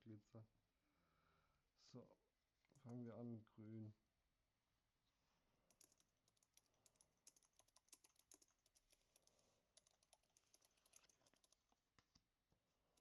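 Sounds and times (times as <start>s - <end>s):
rapid clicking and tapping: 5.7s - 12.3s.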